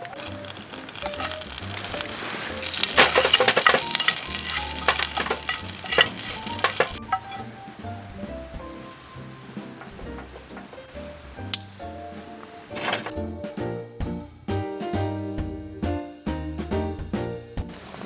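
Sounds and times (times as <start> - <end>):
food sizzling in a pan: 0.0 - 13.1.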